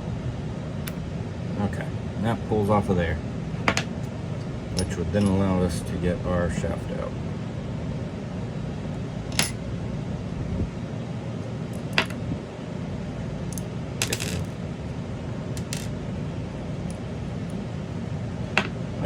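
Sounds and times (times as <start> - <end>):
small metal parts clinking: 4.8 - 5.4, 9.3 - 9.6, 13.5 - 14.6, 15.6 - 15.9.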